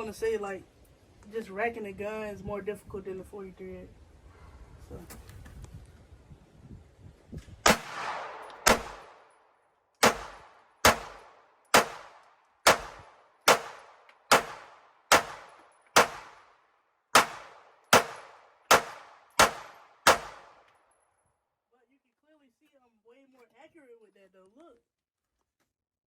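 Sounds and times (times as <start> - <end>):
pistol shots with echo: 7.6 - 9.4, 10.0 - 20.7.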